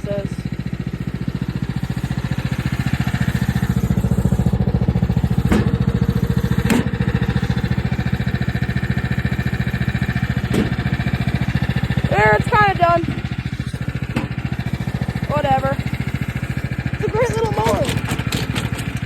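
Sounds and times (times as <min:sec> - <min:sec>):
lawn mower engine running: 0:00.0 - 0:19.0
sharp knocks: 0:05.4 - 0:05.8, 0:06.6 - 0:07.0, 0:14.1 - 0:14.5.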